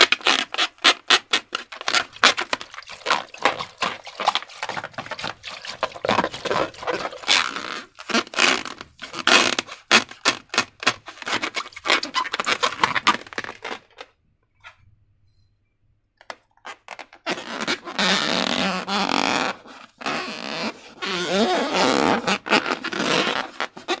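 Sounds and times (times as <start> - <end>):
fart-like slime squelches: 0.0 - 14.0, 17.2 - 24.0
slime squelching: 0.0 - 14.1.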